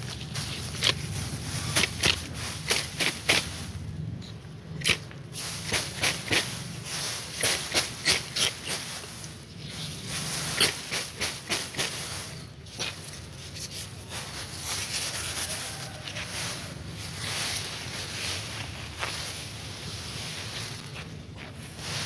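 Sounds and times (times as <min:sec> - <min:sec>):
bamboo striking rice stalks: 0:00.0 - 0:03.8, 0:04.8 - 0:16.7
straw and grain rustling: 0:00.0 - 0:22.0.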